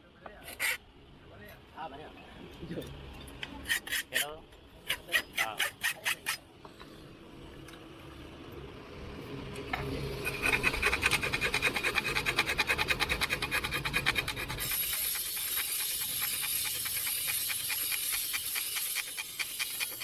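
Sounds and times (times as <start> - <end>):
rasping metal on metal strokes: 0.4 - 0.8, 3.6 - 6.4, 9.8 - 20.0.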